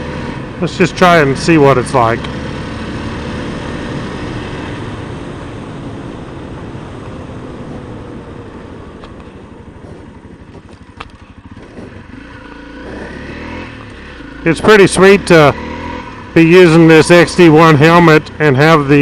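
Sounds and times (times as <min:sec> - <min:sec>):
motorcycle engine running: 0:00.0 - 0:19.0
heavy wind rush: 0:01.2 - 0:13.8.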